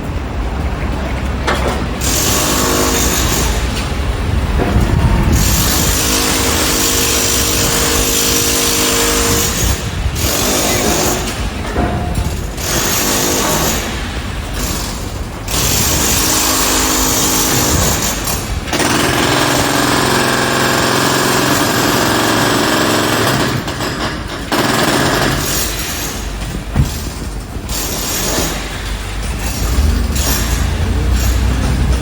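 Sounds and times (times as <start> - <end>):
jackhammer breaking: 4.6 - 32.0
steady engine drone: 25.8 - 32.0.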